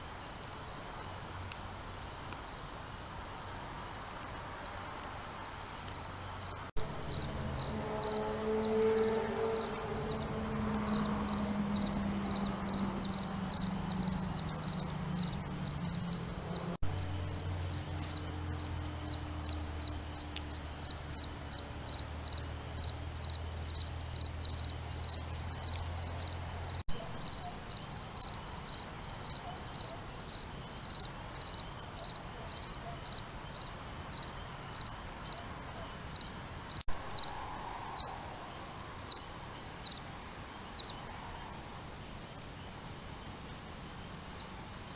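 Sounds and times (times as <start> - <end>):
insects chirping: 0.0 - 35.4, 36.1 - 44.9
loud close insect chirp: 0.0 - 35.4, 36.1 - 37.4, 38.0 - 38.2, 39.1 - 41.0.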